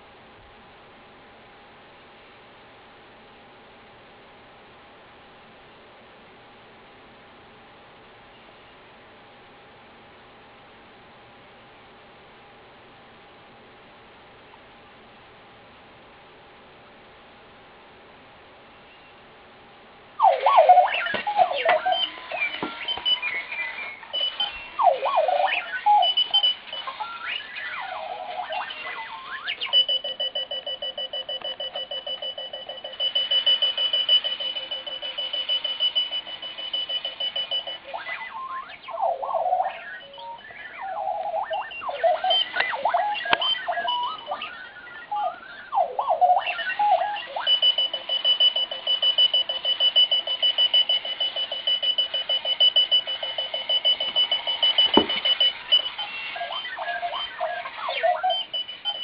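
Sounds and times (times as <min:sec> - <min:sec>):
alarm clock electronic chirps: 0:20.2 - 0:59.0
rapidly pulsing high beep: 0:20.5 - 0:59.0.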